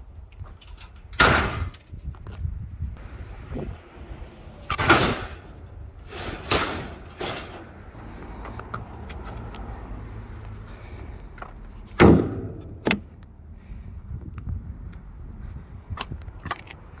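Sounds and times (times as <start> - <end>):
loud bangs with clatter: 1.2 - 1.8, 3.0 - 8.0, 12.0 - 13.2
low steady rumble: 10.9 - 15.6.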